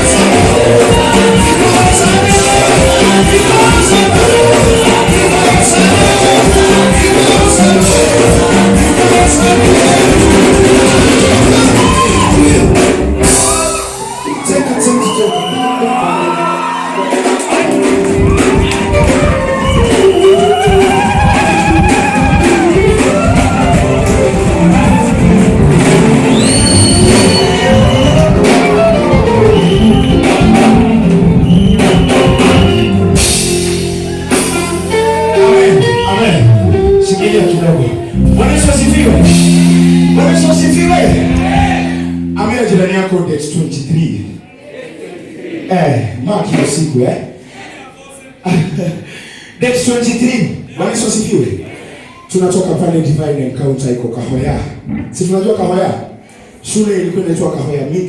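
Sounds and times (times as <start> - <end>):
voices shouting and singing: 0.0 - 33.2, 33.8 - 43.3
worship band playing: 0.0 - 58.0.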